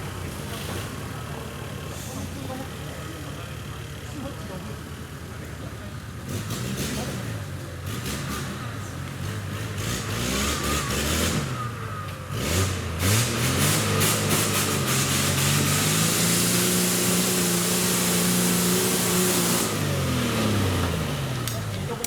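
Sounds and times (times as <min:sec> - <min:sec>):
engine revving hard: 0:06.2 - 0:21.7.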